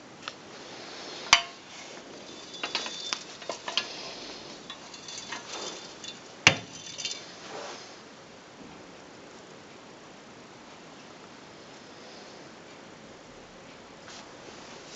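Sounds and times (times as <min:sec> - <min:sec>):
metal stand clinking and rattling: 0:01.4 - 0:07.4
sharp metal knocks: 0:04.7 - 0:07.2.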